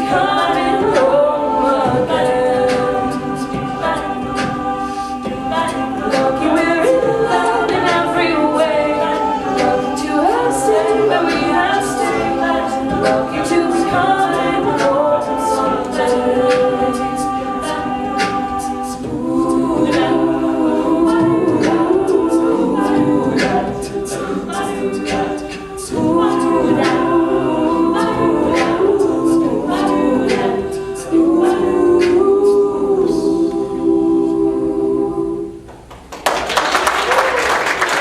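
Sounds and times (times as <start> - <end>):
vocal group singing in harmony: 0.0 - 35.9
audience applause: 35.9 - 38.0.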